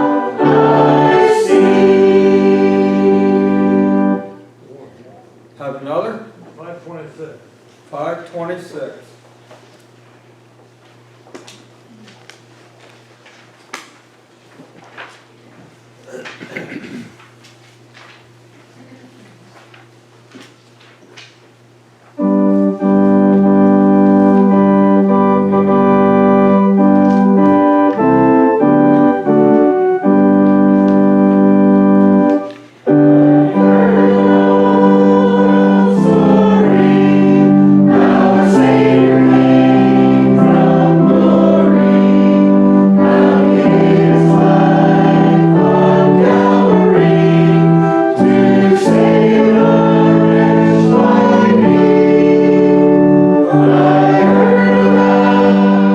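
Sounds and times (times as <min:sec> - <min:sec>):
congregation singing a hymn: 0:00.0 - 0:04.5, 0:22.2 - 0:55.9
organ playing chords: 0:00.0 - 0:04.6, 0:22.2 - 0:55.9.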